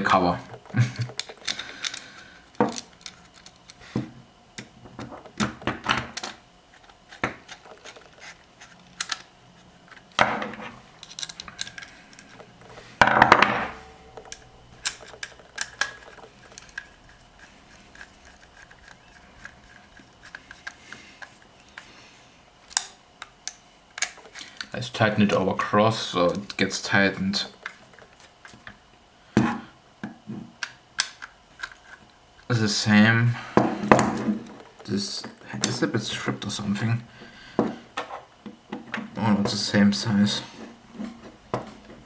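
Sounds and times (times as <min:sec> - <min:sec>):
small metal parts clinking: 0:01.0 - 0:03.8, 0:10.9 - 0:12.6, 0:14.1 - 0:21.8.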